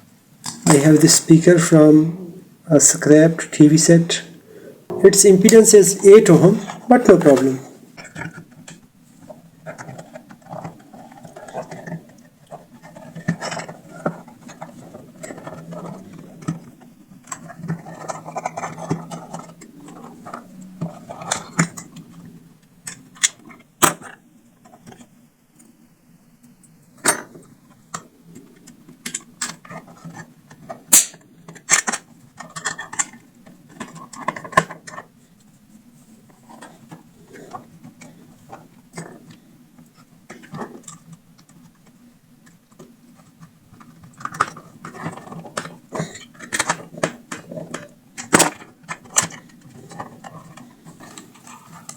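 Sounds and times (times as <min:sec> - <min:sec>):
steady low hum: 0:00.0 - 0:31.6
small parts and tools clicking: 0:09.6 - 0:22.2, 0:36.5 - 0:51.9.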